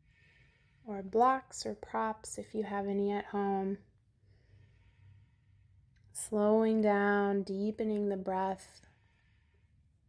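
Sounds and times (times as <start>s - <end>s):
faint soft breath: 0.0s - 1.1s, 4.0s - 6.1s, 8.7s - 10.0s.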